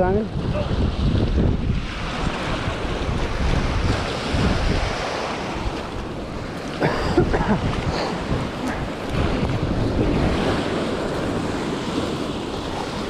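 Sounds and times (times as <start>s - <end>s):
rushing water: 0.0s - 13.0s
wind buffeting microphone: 0.0s - 13.0s.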